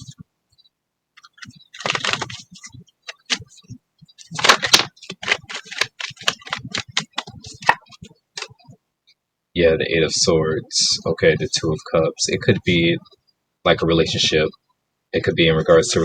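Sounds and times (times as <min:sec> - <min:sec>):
cards clicking and snapping: 0:01.2 - 0:02.4, 0:03.1 - 0:03.4, 0:04.3 - 0:08.5
cards shuffling rustle: 0:01.2 - 0:03.6, 0:04.2 - 0:08.5.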